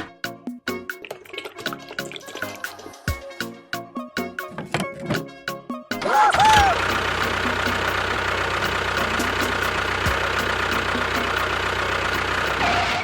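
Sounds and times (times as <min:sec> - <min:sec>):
small engine running: 0:06.1 - 0:13.0.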